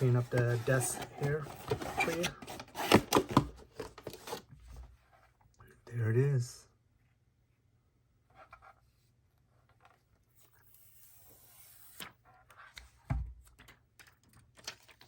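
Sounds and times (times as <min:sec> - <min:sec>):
plastic rubbing and scraping: 0:00.0 - 0:04.4.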